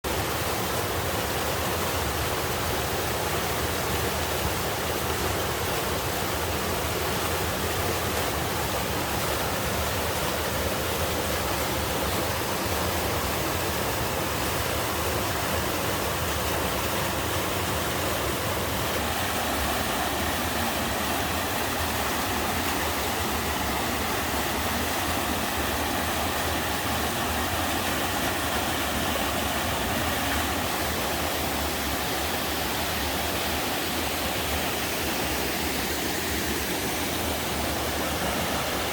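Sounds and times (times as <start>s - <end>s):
water rushing down rock: 0.1s - 38.9s.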